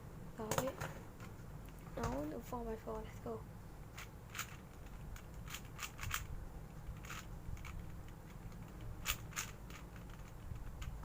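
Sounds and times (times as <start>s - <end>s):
puzzle cube clicking: 4.0s - 11.0s.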